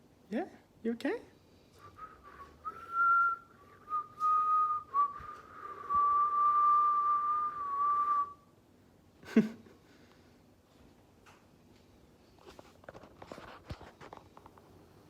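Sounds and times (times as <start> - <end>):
person whistling: 1.8 - 8.4.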